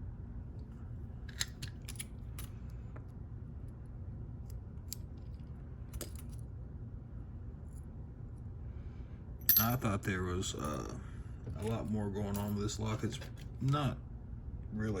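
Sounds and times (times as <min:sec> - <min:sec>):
small metal lock parts clinking: 0:01.2 - 0:02.6, 0:04.5 - 0:06.5, 0:09.4 - 0:09.9.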